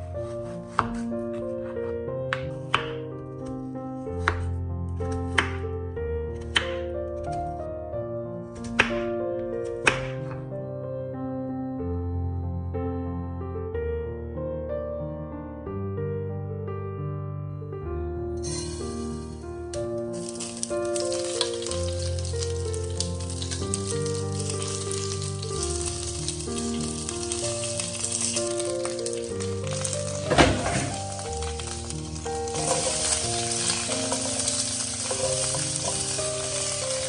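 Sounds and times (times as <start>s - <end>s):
soft piano music: 0.0s - 37.0s
food sizzling in hot oil: 18.4s - 37.0s
loud oil crackle: 19.8s - 37.0s.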